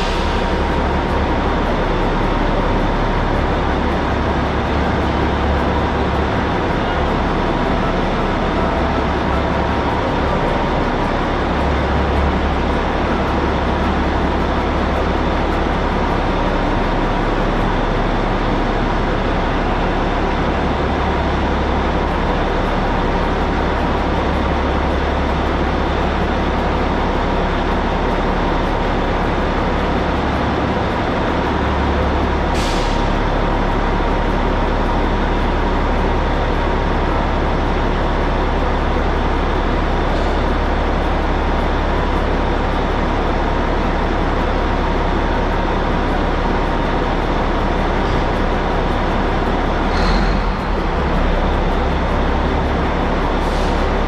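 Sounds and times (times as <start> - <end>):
diesel engine running: 0.0 - 54.0
short hiss: 32.6 - 33.1.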